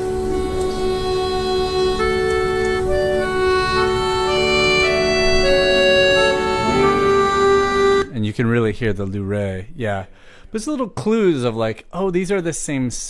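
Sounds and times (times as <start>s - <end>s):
accordion slow melody: 0.0s - 8.2s.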